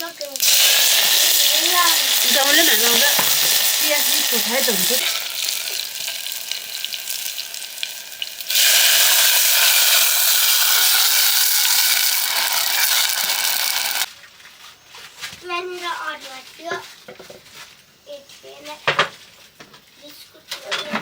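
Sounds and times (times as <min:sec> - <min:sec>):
food sizzling in hot oil: 0:00.0 - 0:14.4
utensil scraping pan: 0:00.5 - 0:07.2, 0:08.5 - 0:14.1.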